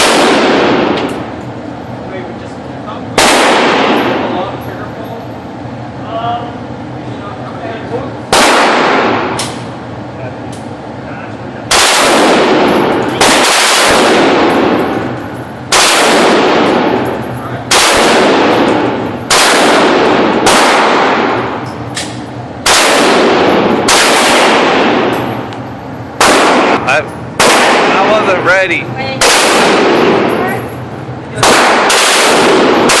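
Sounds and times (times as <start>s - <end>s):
echoing gunshots: 0.0s - 1.4s, 3.2s - 4.4s, 8.3s - 9.7s, 11.7s - 21.7s, 22.6s - 25.5s, 26.2s - 30.5s, 31.4s - 33.0s.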